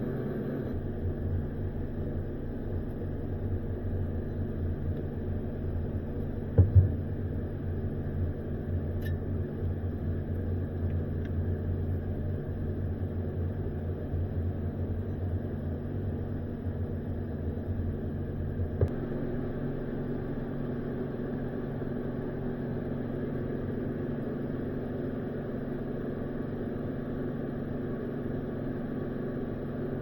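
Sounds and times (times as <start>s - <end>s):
low mechanical hum: 0.0s - 30.0s
sharp thumps: 6.4s - 7.4s.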